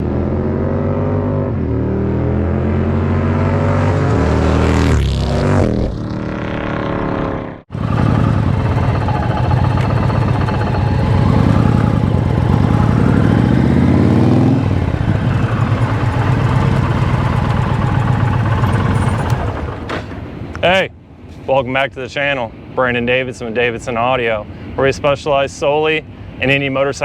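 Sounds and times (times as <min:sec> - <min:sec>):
motorcycle engine revving: 0:00.0 - 0:20.5.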